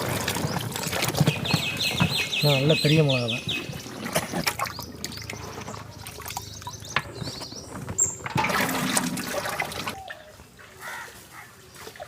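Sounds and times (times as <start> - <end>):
water splashing: 0.0 - 10.2
bird chirps: 1.2 - 8.3.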